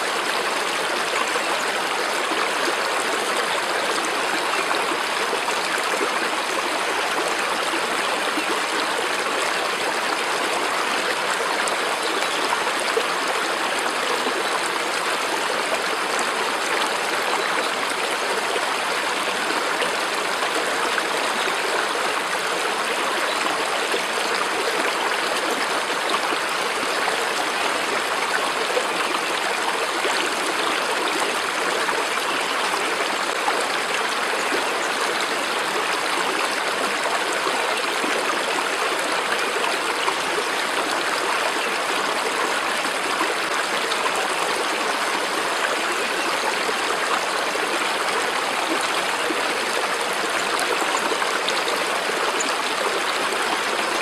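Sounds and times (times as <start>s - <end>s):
stream water running: 0.0s - 54.0s.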